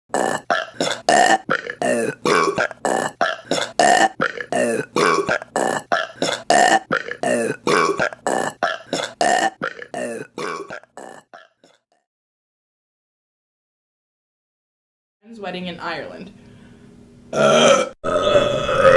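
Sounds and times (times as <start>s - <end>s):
short burps: 0.1s - 11.8s, 17.3s - 18.9s.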